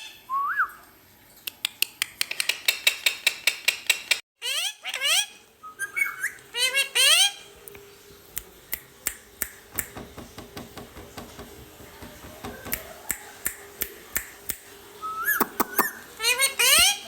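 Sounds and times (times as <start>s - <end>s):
sharp dry clicks: 8.4s - 14.6s.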